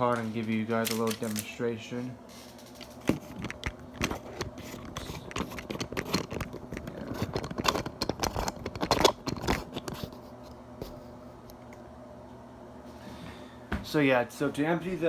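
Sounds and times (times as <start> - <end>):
camera handling clicks and scrapes: 2.8 - 10.2.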